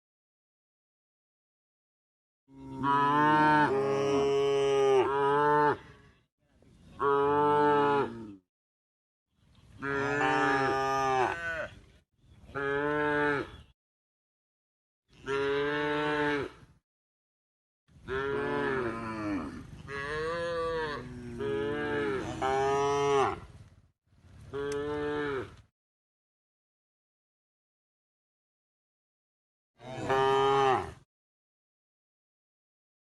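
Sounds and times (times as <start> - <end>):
cattle mooing: 2.5 - 5.9, 9.8 - 11.7, 18.1 - 23.5, 29.8 - 31.0.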